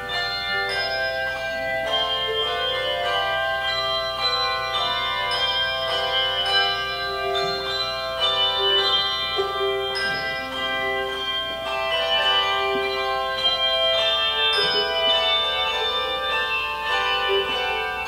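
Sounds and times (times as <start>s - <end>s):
handbell choir playing melody: 0.0s - 18.0s.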